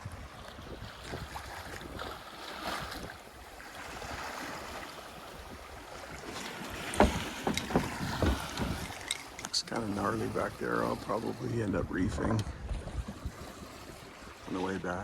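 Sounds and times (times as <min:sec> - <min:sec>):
wind noise: 0:00.0 - 0:03.2, 0:03.9 - 0:14.2
water rushing along hull: 0:00.0 - 0:15.0
sharp knocks: 0:06.7 - 0:09.4.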